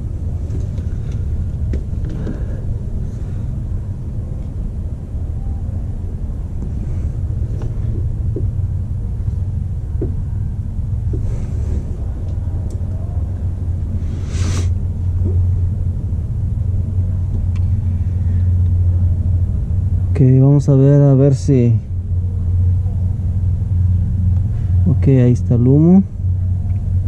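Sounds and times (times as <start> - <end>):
machine low rumble: 0.0 - 27.0
short hiss: 14.0 - 14.8.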